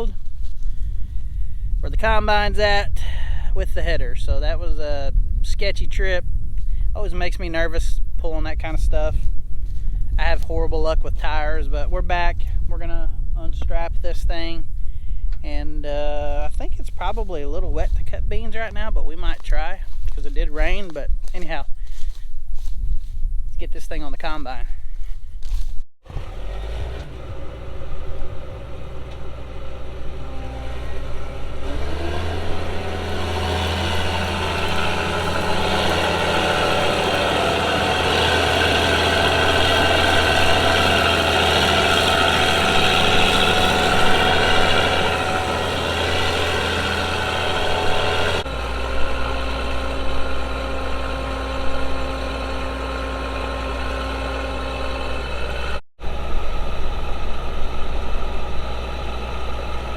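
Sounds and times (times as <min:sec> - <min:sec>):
diesel engine running: 0:00.0 - 0:04.6, 0:25.6 - 0:59.9
steady whine: 0:27.0 - 0:59.9.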